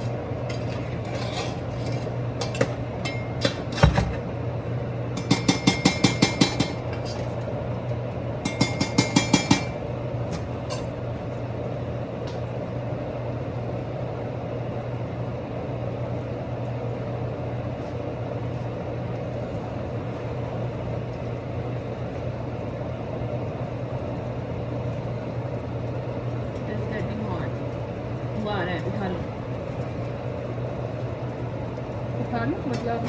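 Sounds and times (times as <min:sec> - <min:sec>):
exhaust fan humming: 0:00.0 - 0:33.0
utensils clinking: 0:00.4 - 0:04.2.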